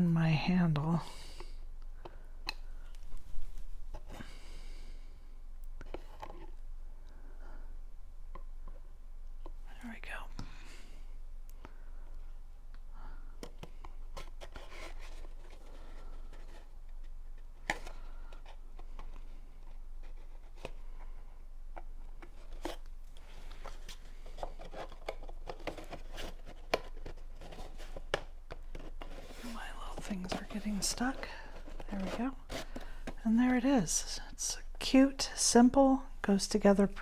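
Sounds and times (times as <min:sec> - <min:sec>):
cardstock paper rustling: 0:21.8 - 0:33.9.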